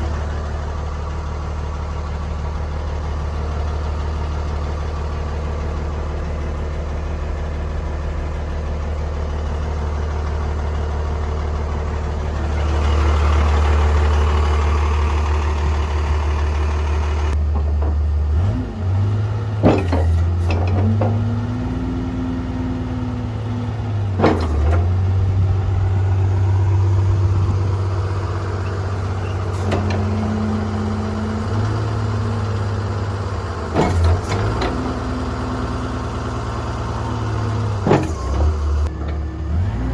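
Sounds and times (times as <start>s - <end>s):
wheel loader diesel engine: 0.0s - 39.9s.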